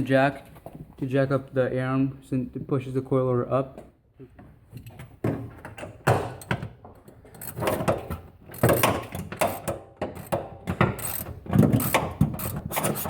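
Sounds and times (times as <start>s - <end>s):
floor jack clunks and ratcheting: 4.8s - 13.0s.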